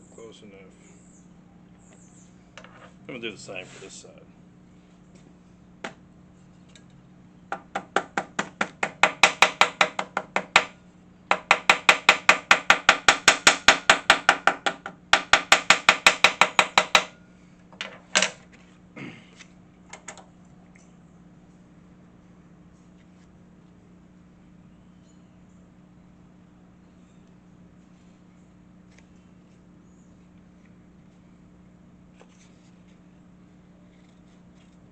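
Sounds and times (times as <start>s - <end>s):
small hammer tapping rapidly: 7.5s - 10.7s, 11.3s - 17.1s.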